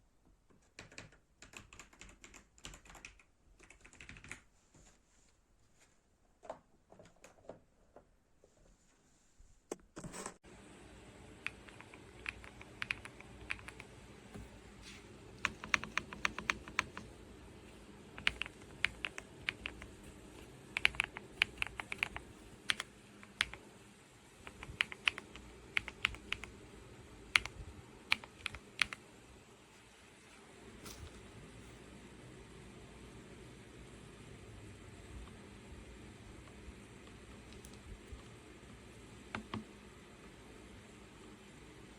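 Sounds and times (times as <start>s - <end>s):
mechanical keyboard typing: 0.6s - 4.4s, 11.4s - 14.0s, 15.3s - 17.2s, 18.1s - 23.6s, 24.4s - 26.6s, 27.3s - 29.0s, 39.2s - 39.7s
faint low hum: 7.8s - 41.9s.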